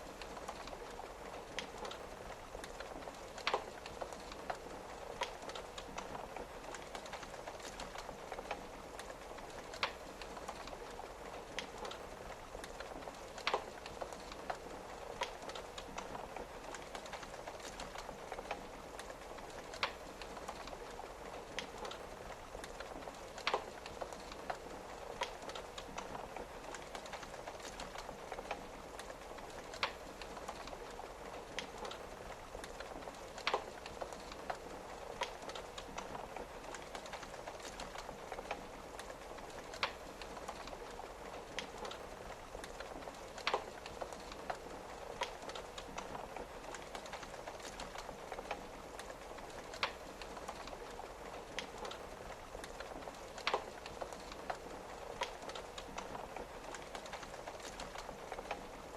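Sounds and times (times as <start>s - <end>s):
rain on a window: 0.0s - 58.9s
wood fire crackling: 0.0s - 58.9s.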